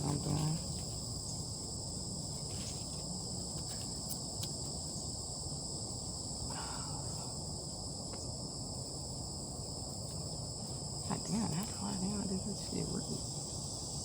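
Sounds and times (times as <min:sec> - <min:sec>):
high-pitched insect chorus: 0:00.0 - 0:14.0.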